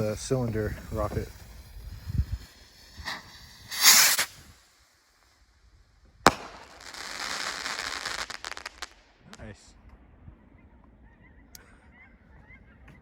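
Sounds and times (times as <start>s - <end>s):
firework rocket whoosh: 0.0s - 5.4s, 6.2s - 9.0s
firework crackling: 0.0s - 9.5s
firework bang: 0.4s - 4.6s, 6.2s - 9.4s.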